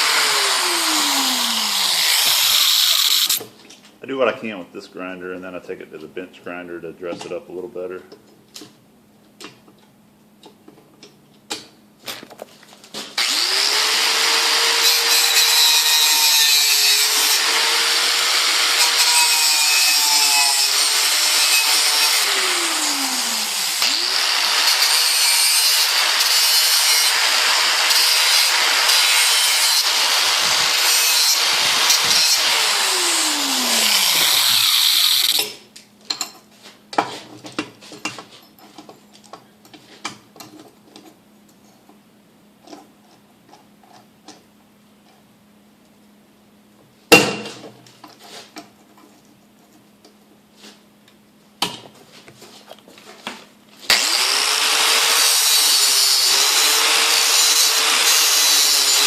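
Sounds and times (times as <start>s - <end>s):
electric grinder grinding steel: 0.0s - 3.4s, 13.2s - 35.6s, 53.9s - 59.0s.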